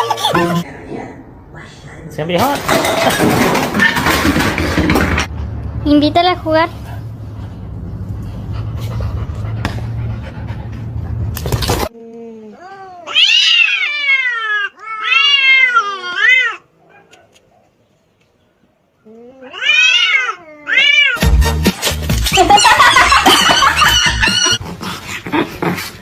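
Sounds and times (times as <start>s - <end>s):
cat yowling: 12.8s - 16.7s, 19.4s - 21.2s.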